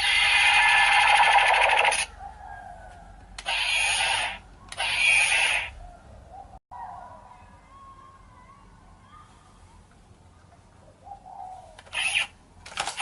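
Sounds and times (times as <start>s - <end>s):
toy speaker screechy bursts: 0.0s - 2.1s, 3.4s - 5.8s, 11.9s - 12.4s.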